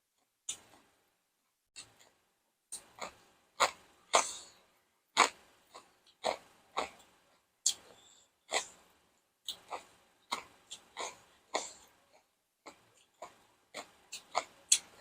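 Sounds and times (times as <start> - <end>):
person chewing crisp food: 2.7 - 4.6, 5.2 - 15.0.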